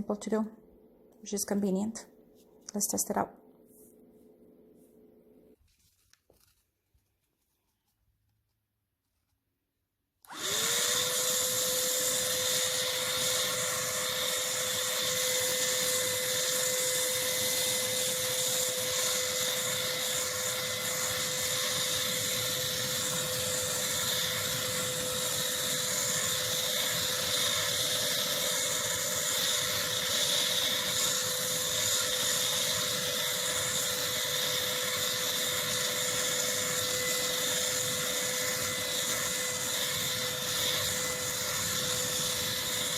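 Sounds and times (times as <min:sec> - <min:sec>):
stick vacuum cleaner running: 0:10.2 - 0:42.9.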